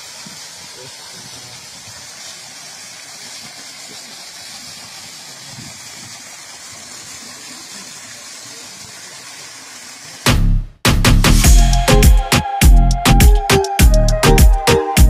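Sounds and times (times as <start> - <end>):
steady rushing hiss: 0.0 - 10.3.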